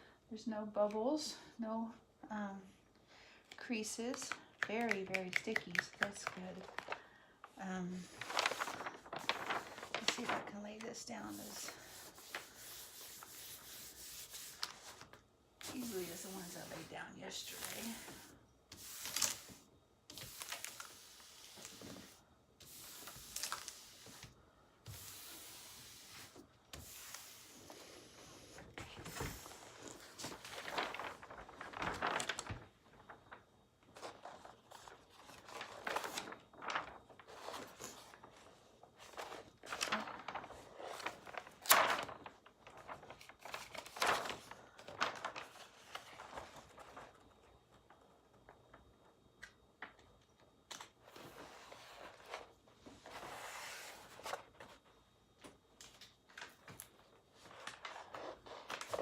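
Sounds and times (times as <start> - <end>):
rustling and scraping of plastic cover: 5.8 - 47.4.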